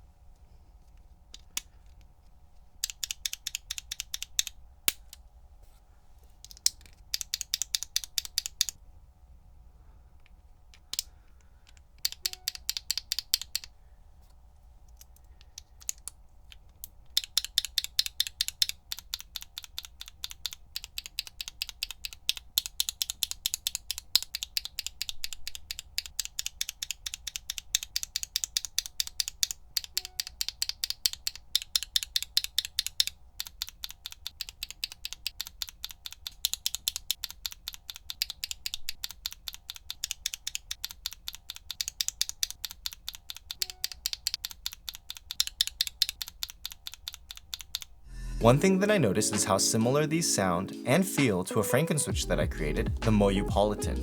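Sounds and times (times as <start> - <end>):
keyboard switches clacking: 2.8 - 5.2, 12.0 - 13.7.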